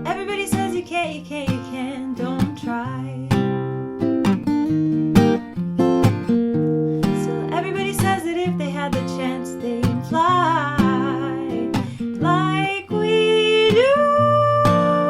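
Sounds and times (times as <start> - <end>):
strummed acoustic guitar: 0.0 - 15.0
person singing wordless melody: 7.2 - 15.0.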